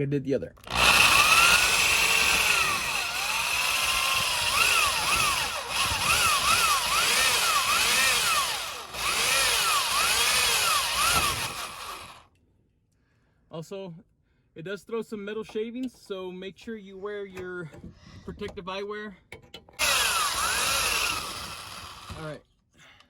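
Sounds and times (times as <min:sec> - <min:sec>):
power drill drilling metal: 0:00.6 - 0:12.2, 0:19.8 - 0:22.4.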